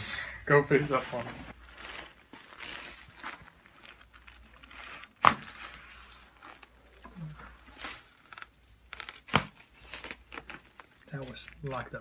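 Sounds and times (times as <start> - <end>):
soft rustling on a table: 0.7 - 12.0.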